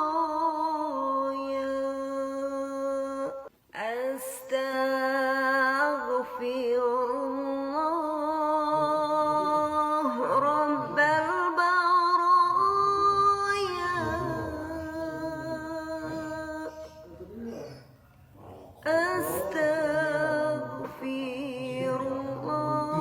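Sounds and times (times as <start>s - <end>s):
person chanting slowly: 4.5s - 17.8s, 18.4s - 23.0s.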